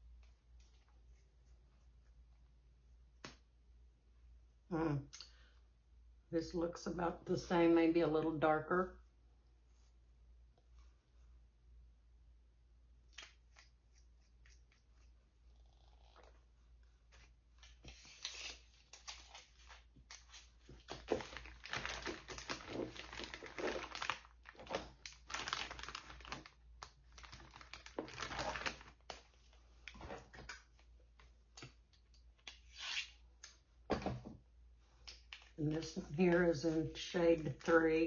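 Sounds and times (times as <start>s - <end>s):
plastic packaging crinkling: 17.6s - 30.0s.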